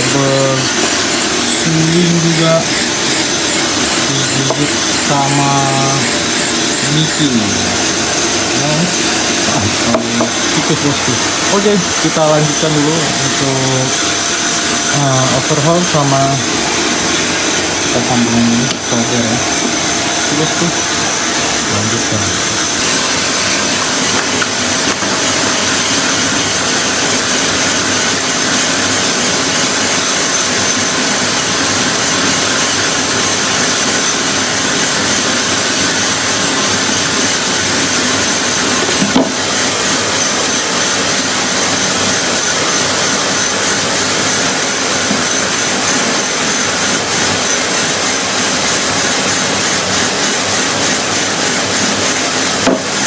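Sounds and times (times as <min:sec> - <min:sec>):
faint high whine: 0:00.0 - 0:25.0
machine running loudly: 0:00.0 - 0:53.0.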